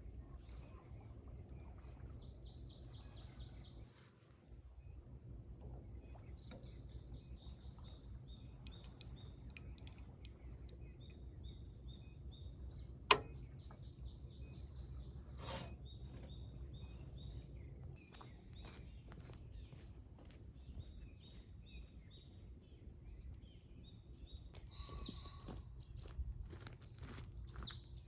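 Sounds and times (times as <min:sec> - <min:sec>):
low background rumble: 0:00.0 - 0:27.4
birds chirping: 0:05.8 - 0:26.2.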